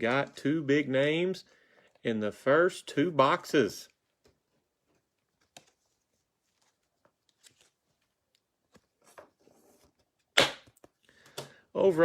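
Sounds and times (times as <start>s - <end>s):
trading cards rustling and clicking: 4.1s - 11.6s.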